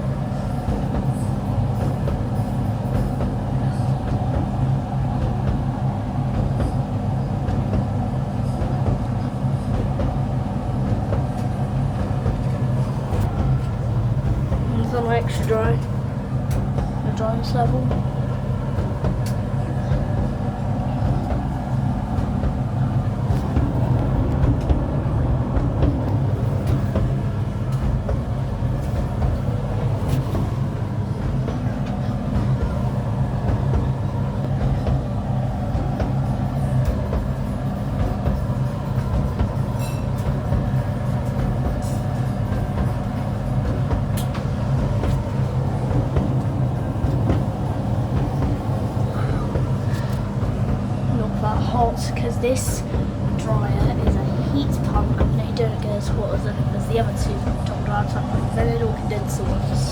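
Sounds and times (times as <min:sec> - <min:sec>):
tumble dryer humming: 0:00.0 - 0:59.9
tumbling drum rumble: 0:00.0 - 0:59.9.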